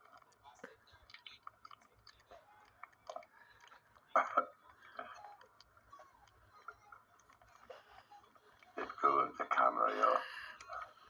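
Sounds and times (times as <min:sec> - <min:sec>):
monkey chewing wet smacking: 0:00.0 - 0:08.8.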